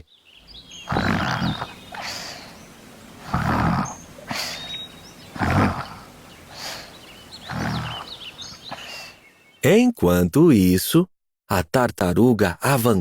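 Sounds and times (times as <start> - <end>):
faint birdsong chirps: 0.0 - 9.8
cartoon snoring: 0.8 - 2.5, 3.2 - 4.7, 5.3 - 9.0.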